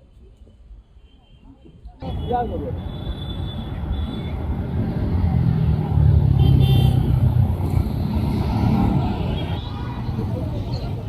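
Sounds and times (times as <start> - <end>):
city road traffic: 0.0 - 11.0
vehicle passing close: 4.3 - 11.0.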